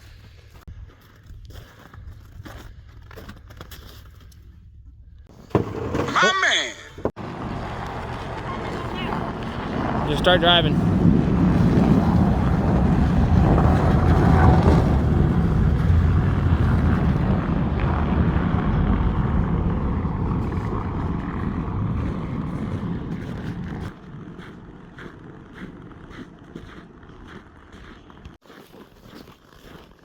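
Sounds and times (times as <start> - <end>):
vehicle engine rumble: 6.9 - 28.4.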